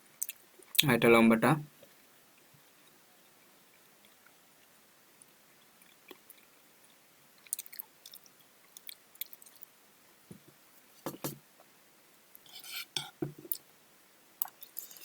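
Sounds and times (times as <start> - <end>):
chewing fruit: 7.4 - 9.7.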